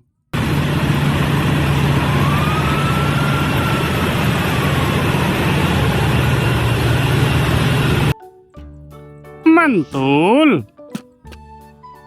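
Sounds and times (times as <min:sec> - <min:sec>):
truck engine idling: 0:00.4 - 0:08.1.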